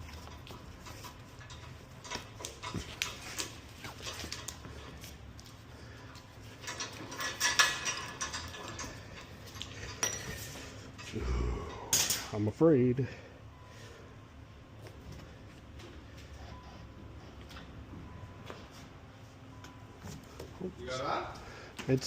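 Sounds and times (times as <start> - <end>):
metal clatter: 6.6 - 11.1.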